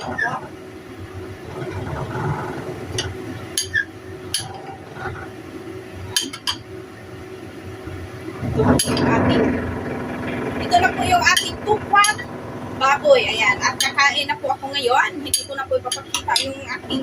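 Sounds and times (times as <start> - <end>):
low background rumble: 8.3 - 17.0.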